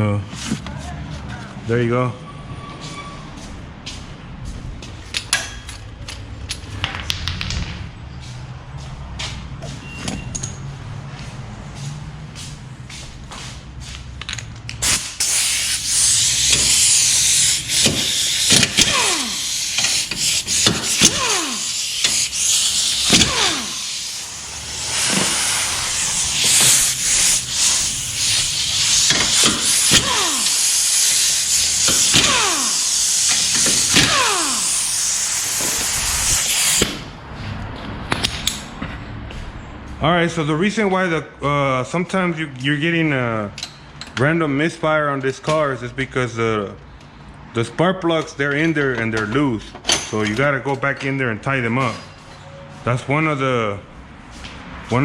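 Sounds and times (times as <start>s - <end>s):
loud steady hiss: 14.8s - 37.0s.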